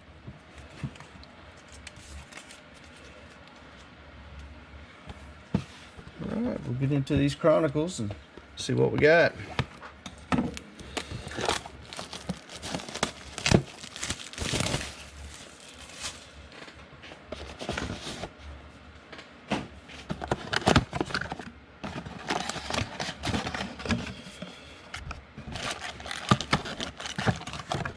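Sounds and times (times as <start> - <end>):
card pack wrappers crinkling: 1.6 - 3.5, 10.9 - 16.6, 25.6 - 27.9
cards rustling: 1.6 - 3.8, 10.8 - 16.6.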